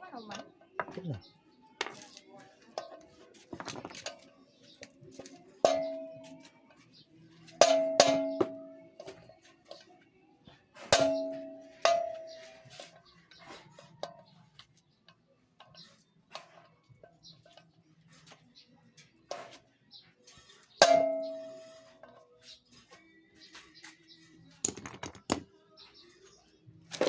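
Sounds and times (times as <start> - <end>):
hammer striking metal: 7.6 - 8.8, 10.9 - 12.6, 20.8 - 21.9.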